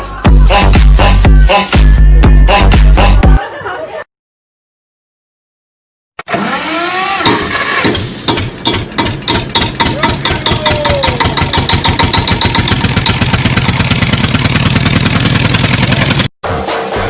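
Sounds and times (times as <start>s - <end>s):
engine starting and running: 6.2s - 17.0s.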